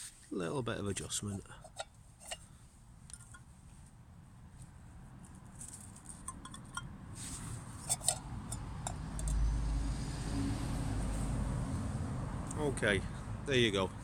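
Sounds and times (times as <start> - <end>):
road traffic rumbling: 2.3 - 14.0
vehicle passing: 6.9 - 14.0.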